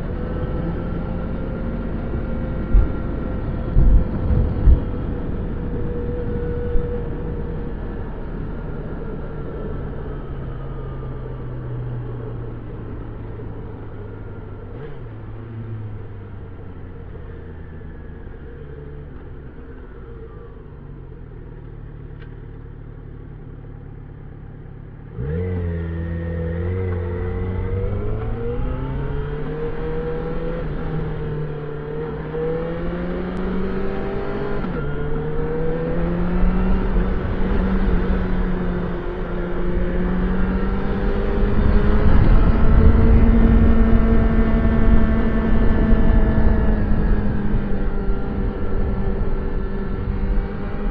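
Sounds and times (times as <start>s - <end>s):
motorcycle engine revving: 25.0s - 50.9s.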